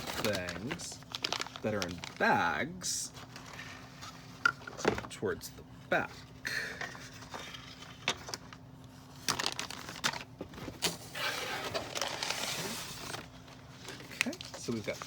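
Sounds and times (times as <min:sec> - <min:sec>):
plastic packaging crinkling: 0:00.0 - 0:03.7, 0:09.2 - 0:10.3.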